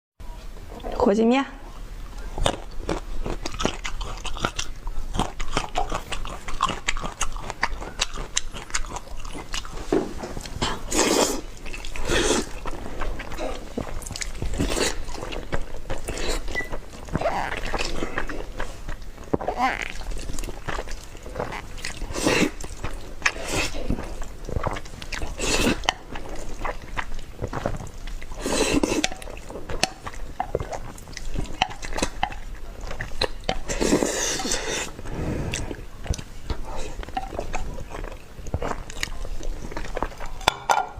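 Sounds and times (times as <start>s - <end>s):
wet chewing and mouth clicks: 2.1s - 40.8s
noodle slurping: 10.4s - 32.3s, 33.0s - 36.0s.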